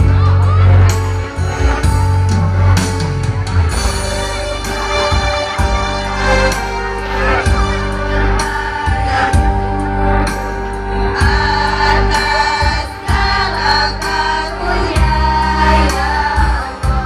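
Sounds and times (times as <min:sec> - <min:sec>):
backing music with steady beat: 0:00.0 - 0:17.0
choir singing: 0:03.7 - 0:17.0.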